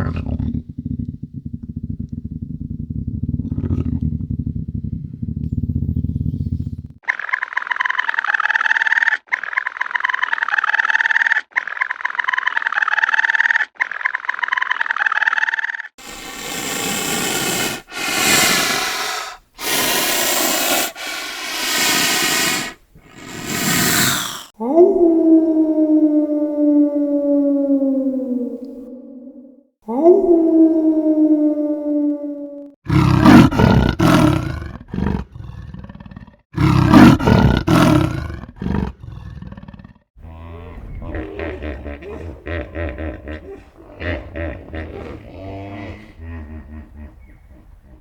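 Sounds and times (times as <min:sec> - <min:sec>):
big cat roaring: 0:00.0 - 0:06.0, 0:16.0 - 0:24.6, 0:30.3 - 0:48.0
big cat grunting: 0:03.2 - 0:05.6, 0:16.0 - 0:24.6, 0:32.9 - 0:48.0
animal hissing: 0:16.0 - 0:24.6.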